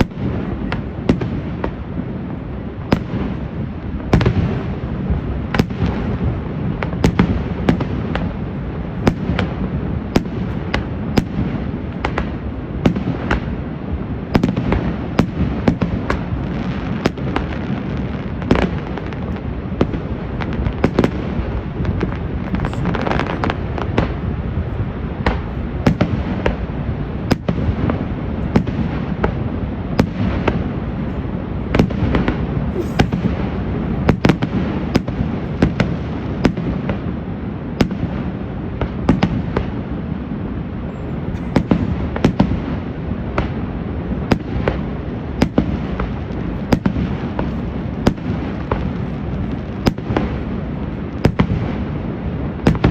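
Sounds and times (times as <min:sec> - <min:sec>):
fireworks bangs and pops: 0:00.0 - 0:52.9
steady low rumble: 0:15.0 - 0:35.8.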